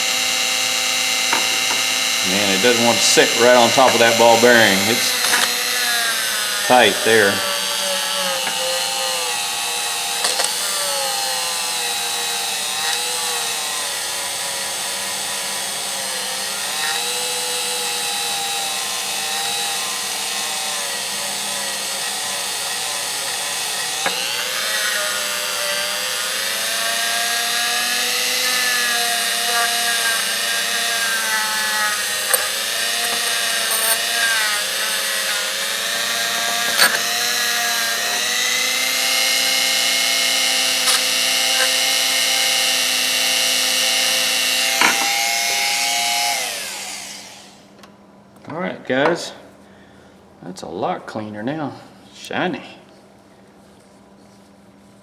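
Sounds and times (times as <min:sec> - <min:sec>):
electric polishing tool running: 0:00.0 - 0:47.7
sharp clicks and knocks: 0:01.2 - 0:02.2, 0:05.1 - 0:05.6, 0:10.2 - 0:10.6, 0:36.4 - 0:37.1, 0:44.7 - 0:45.2.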